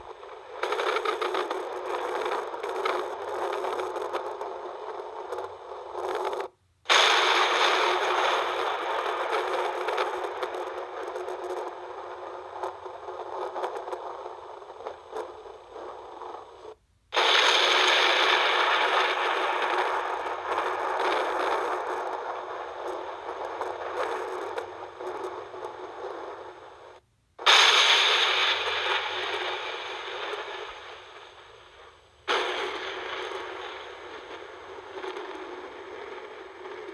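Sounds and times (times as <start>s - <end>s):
hissing storm: 6.9s - 15.1s, 16.3s - 36.9s
crackling thunder rumble: 6.9s - 36.9s.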